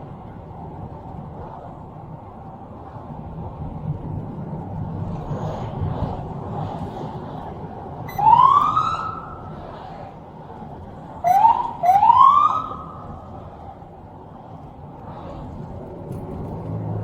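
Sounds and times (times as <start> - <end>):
car driving rumble: 0.0 - 17.0
police siren whoops: 8.1 - 9.5, 11.2 - 13.2.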